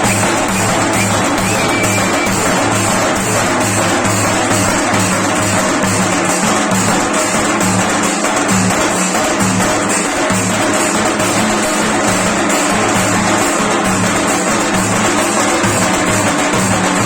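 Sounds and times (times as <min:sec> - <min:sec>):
heavy bass line: 0:00.0 - 0:03.9
procession band music: 0:00.0 - 0:03.9
drums: 0:00.0 - 0:17.0.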